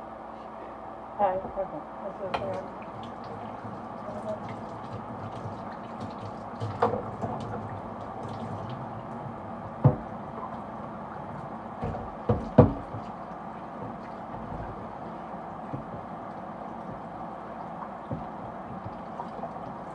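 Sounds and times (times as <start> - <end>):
water dripping: 2.3 - 11.5.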